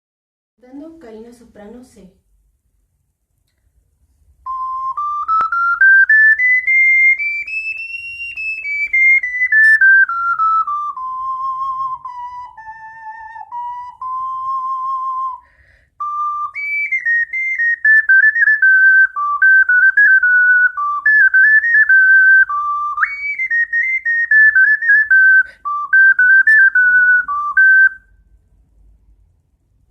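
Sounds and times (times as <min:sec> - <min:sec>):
ocarina playing: 0:04.4 - 0:28.2.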